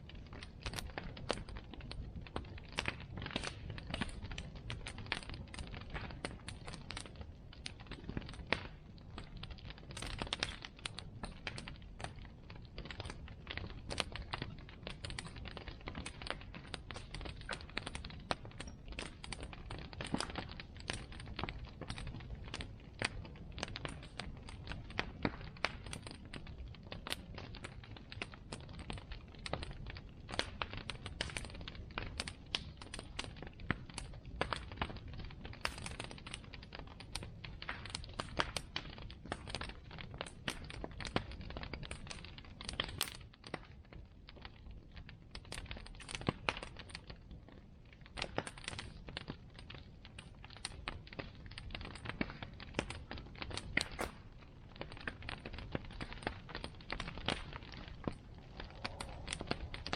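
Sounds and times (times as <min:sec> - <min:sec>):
bonfire crackling: 0:00.0 - 0:59.9
low rumble: 0:57.6 - 0:59.9.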